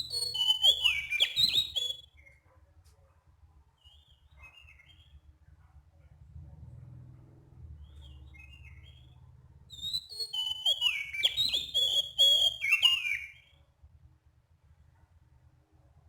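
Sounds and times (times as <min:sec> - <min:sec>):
bird singing whistles: 0:00.0 - 0:02.4, 0:03.8 - 0:05.2, 0:07.8 - 0:13.6
faint low hum: 0:00.0 - 0:12.6.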